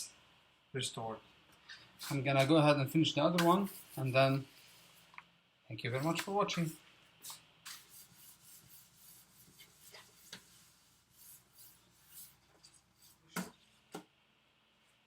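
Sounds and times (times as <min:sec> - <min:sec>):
rubbing and handling noises: 0:03.3 - 0:05.2, 0:05.9 - 0:14.0.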